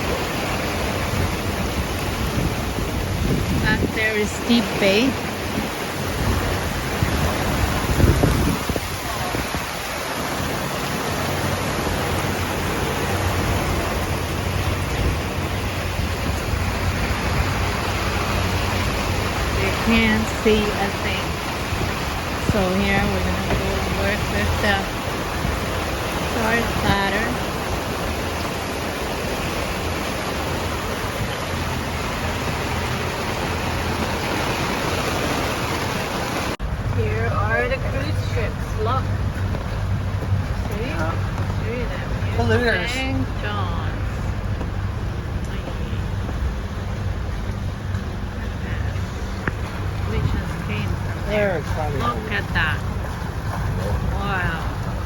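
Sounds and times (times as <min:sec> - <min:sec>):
heavy rain hissing: 0:00.0 - 0:38.9
boat engine humming: 0:00.0 - 0:55.0.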